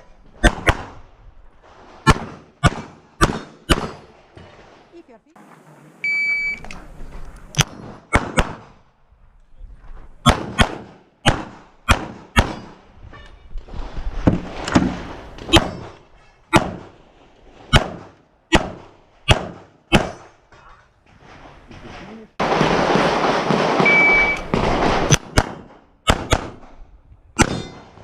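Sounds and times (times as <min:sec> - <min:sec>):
rapid pistol shots: 0:02.1 - 0:04.0, 0:07.6 - 0:08.7, 0:10.3 - 0:12.8, 0:17.7 - 0:20.3, 0:22.4 - 0:26.8.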